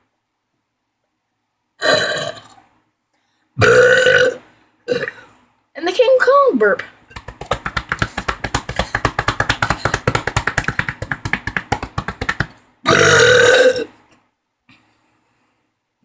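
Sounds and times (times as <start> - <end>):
loud burp: 1.8 - 2.6, 3.6 - 5.3, 12.8 - 14.0
pulsing burp: 1.8 - 2.6, 3.6 - 5.3, 12.8 - 14.0.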